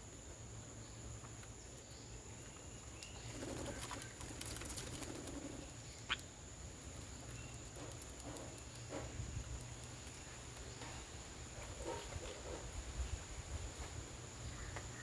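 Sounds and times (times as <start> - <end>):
birds pecking on wood: 2.5 - 6.2, 6.8 - 11.2.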